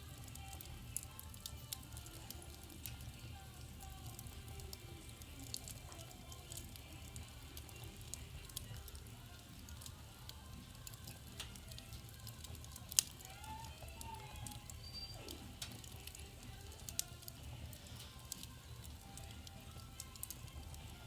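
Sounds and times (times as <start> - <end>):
wood fire crackling: 0.0 - 21.0.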